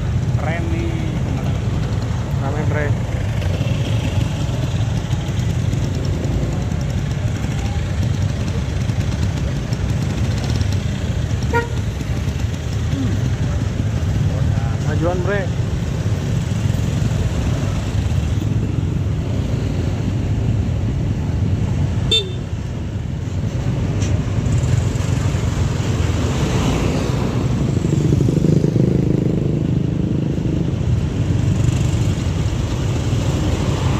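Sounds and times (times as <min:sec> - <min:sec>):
bus diesel engines rumbling: 0:00.0 - 0:33.9
road traffic: 0:00.0 - 0:33.9
horn toot: 0:11.5 - 0:11.9, 0:22.1 - 0:22.4.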